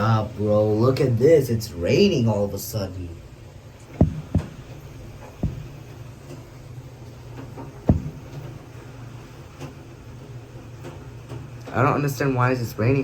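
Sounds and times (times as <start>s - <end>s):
faint rain hiss: 0.0s - 13.0s
low steady hum: 0.0s - 13.0s
dull thumps: 3.8s - 6.7s, 7.5s - 8.6s.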